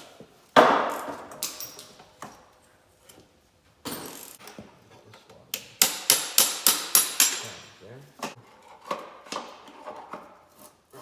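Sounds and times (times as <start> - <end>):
hammer striking metal: 5.6 - 7.7.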